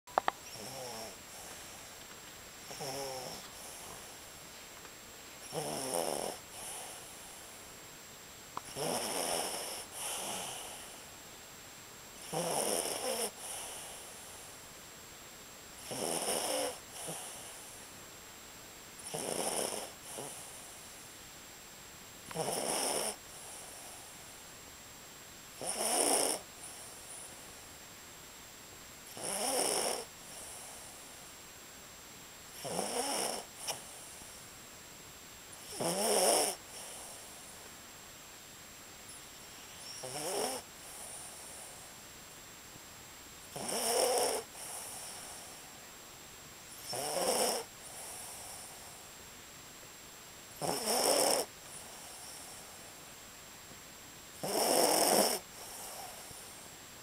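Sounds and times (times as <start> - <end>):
dog snoring: 0.4 - 1.9, 2.6 - 4.2, 5.4 - 7.4, 8.6 - 11.0, 12.2 - 14.5, 15.8 - 17.8, 19.0 - 20.9, 22.3 - 24.2, 25.6 - 27.4, 29.1 - 31.2, 32.5 - 34.4, 35.6 - 37.6, 39.7 - 41.9, 43.5 - 45.6, 46.7 - 48.9, 50.6 - 52.8, 54.4 - 56.6
soft dog breath: 13.0 - 14.7, 40.6 - 42.1.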